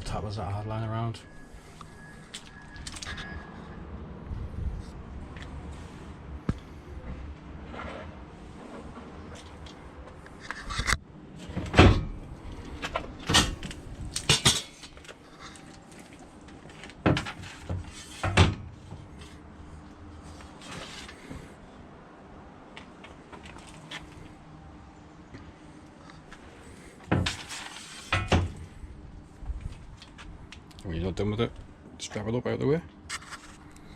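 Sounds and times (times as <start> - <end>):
metal stand clanking: 13.2 - 15.0, 27.1 - 28.6.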